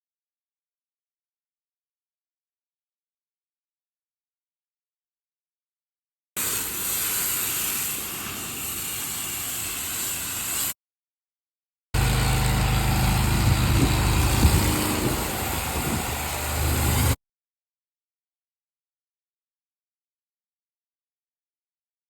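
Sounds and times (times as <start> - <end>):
water spray hissing: 6.4 - 10.8, 12.0 - 17.2
pressure washer engine humming: 12.0 - 17.2.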